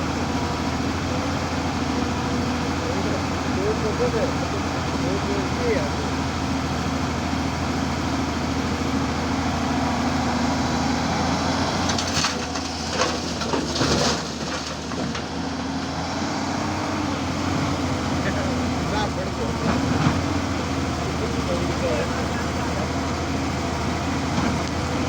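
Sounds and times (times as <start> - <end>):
excavator diesel engine running: 0.0 - 25.0
rock and earth rattling and scraping: 11.7 - 15.7.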